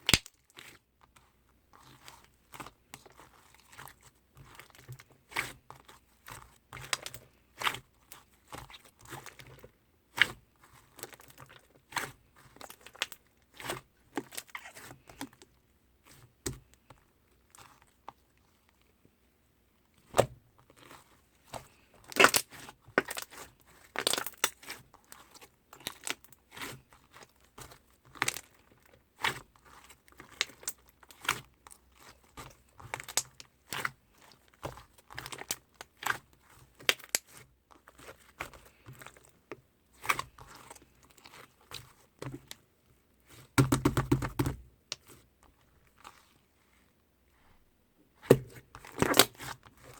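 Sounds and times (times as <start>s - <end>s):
sticky slime popping and crackling: 0.0s - 0.4s, 22.1s - 23.4s, 24.0s - 24.8s, 32.9s - 33.9s, 35.1s - 38.5s, 43.6s - 45.1s, 48.2s - 49.9s.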